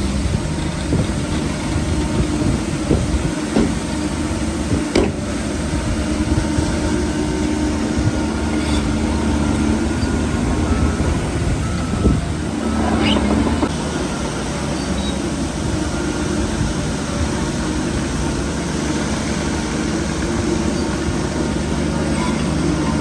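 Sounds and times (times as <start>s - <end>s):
bulldozer diesel engine running: 0.0s - 23.0s
steel tracks clanking: 0.0s - 23.0s
sharp metallic knocks: 4.9s - 5.2s.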